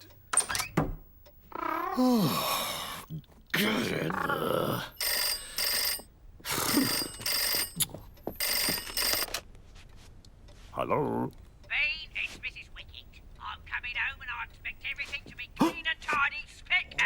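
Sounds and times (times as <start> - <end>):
cartoon voice groaning: 1.5 - 4.9
telephone ringing: 4.8 - 9.5.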